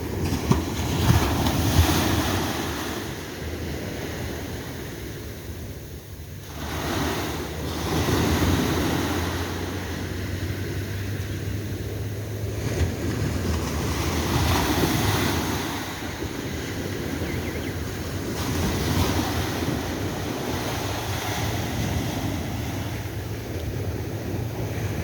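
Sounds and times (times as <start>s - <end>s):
waves breaking on shore: 0.0s - 25.0s
wind buffeting microphone: 0.0s - 25.0s.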